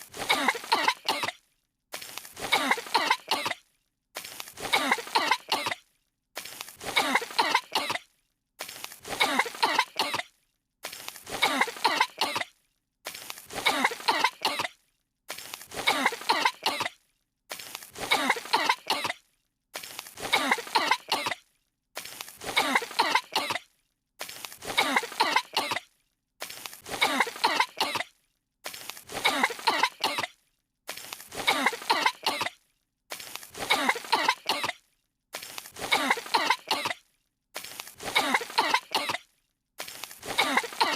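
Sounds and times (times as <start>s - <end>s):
cartoon characters coughing: 0.1s - 1.4s, 2.4s - 3.6s, 4.6s - 5.8s, 6.8s - 8.1s, 9.0s - 10.3s, 11.3s - 12.6s, 13.5s - 14.8s, 15.7s - 17.0s, 18.0s - 19.2s, 20.2s - 21.4s, 22.4s - 23.7s, 24.6s - 25.9s, 26.8s - 28.1s, 29.1s - 30.4s, 31.3s - 32.6s, 33.6s - 34.9s, 35.8s - 37.0s, 38.0s - 39.3s, 40.2s - 40.9s.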